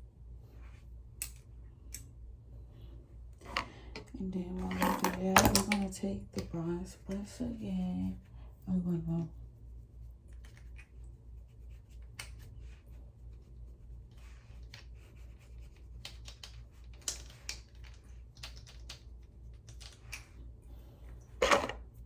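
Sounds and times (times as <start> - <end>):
low steady hum: 0.0 - 22.0
makeup brush scratching: 9.0 - 16.9.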